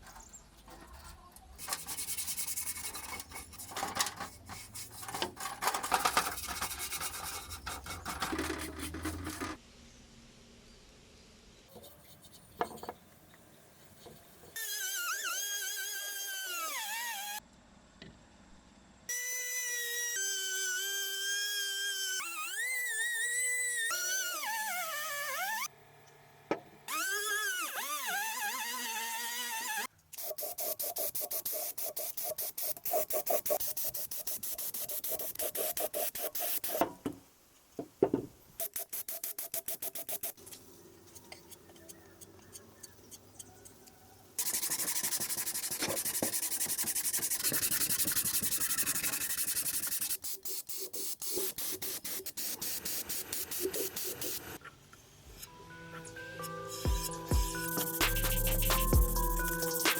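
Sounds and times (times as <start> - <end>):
sanding strokes on metal: 0.9 - 9.5, 27.8 - 36.8, 38.6 - 40.4, 44.4 - 54.6, 56.7 - 59.9.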